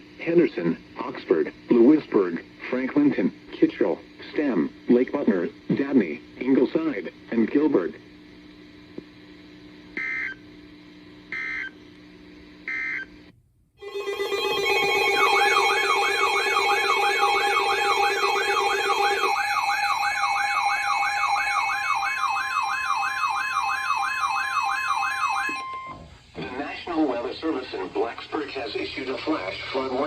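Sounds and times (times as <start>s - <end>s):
data tone bursts: 13.8s - 21.9s
electronic alert tones: 13.8s - 22.8s
warbling siren tone: 13.8s - 25.9s.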